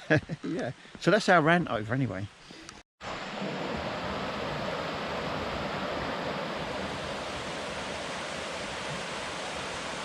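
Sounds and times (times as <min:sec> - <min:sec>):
stream water running over rocks: 0:03.0 - 0:10.0.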